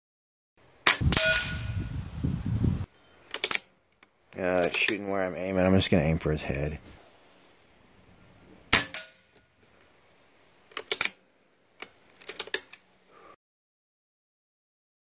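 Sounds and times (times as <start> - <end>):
rifle action metallic clicks: 3.3 - 5.0, 10.7 - 11.2.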